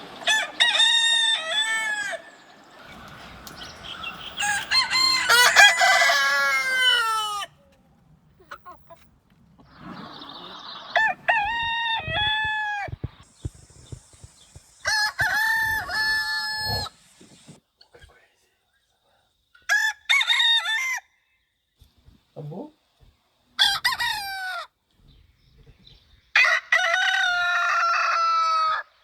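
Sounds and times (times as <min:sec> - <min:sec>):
rooster crowing: 0:00.0 - 0:07.6, 0:10.4 - 0:13.2, 0:14.7 - 0:17.6, 0:19.7 - 0:21.1, 0:26.4 - 0:29.0.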